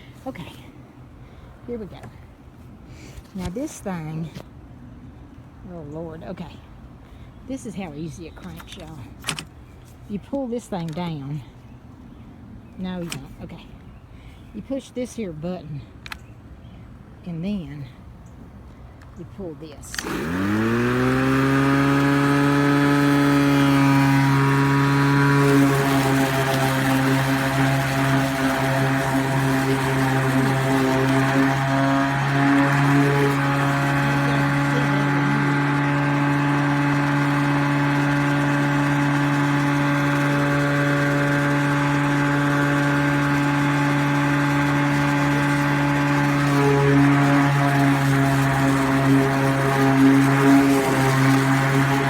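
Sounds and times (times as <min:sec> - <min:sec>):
electric lawn mower whine and hum: 0:19.8 - 0:52.0.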